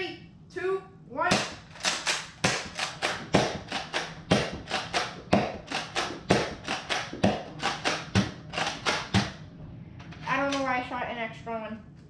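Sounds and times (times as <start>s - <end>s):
toy blaster firing clack: 1.4s - 9.2s.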